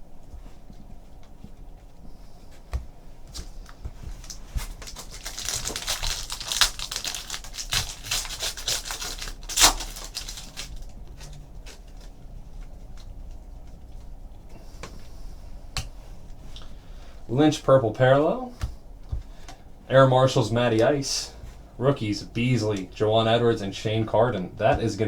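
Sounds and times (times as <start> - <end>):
card pack crinkling and rustling: 3.6 - 12.3.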